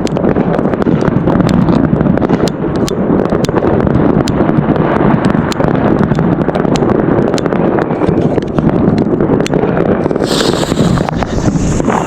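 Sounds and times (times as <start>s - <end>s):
fireworks popping and crackling: 0.0s - 12.0s
wind on microphone: 0.0s - 12.0s
hissing rush: 10.1s - 12.0s.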